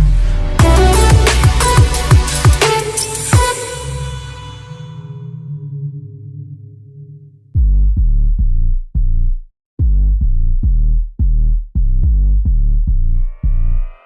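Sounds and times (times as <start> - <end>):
punchy electronic bass line: 0.0 - 5.1, 7.6 - 14.0
rising synth sweep: 0.0 - 5.7.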